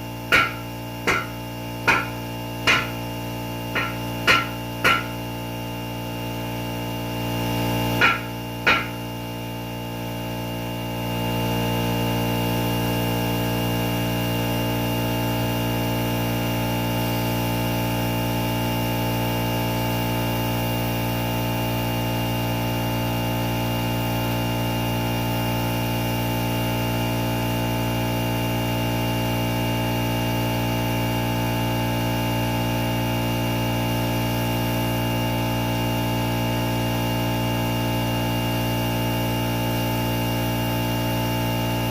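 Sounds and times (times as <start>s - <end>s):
air compressor motor humming: 0.0s - 41.9s
sharp metallic knocks: 0.3s - 3.1s, 3.7s - 5.2s, 8.0s - 9.0s.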